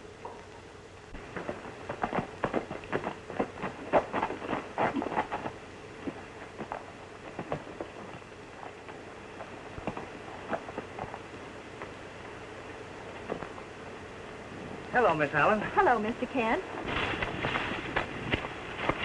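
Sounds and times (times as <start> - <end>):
faint steady hum: 0.0 - 19.0
horses' hooves clattering: 1.2 - 12.4, 13.0 - 13.7, 16.8 - 19.0.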